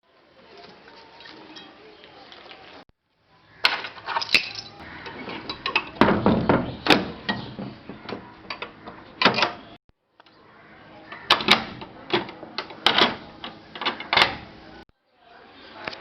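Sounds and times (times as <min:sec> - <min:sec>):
sharp knocks and clinks: 0:03.7 - 0:09.7.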